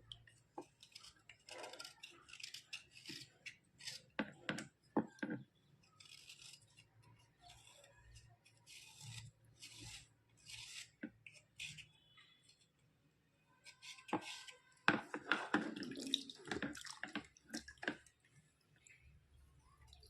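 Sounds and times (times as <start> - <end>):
slate pencils scraping: 5.8 - 12.7, 13.6 - 17.2.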